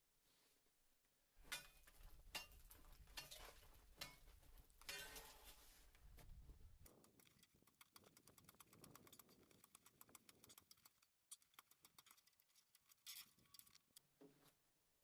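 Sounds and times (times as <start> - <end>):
chisel scrape: 6.9 - 14.1.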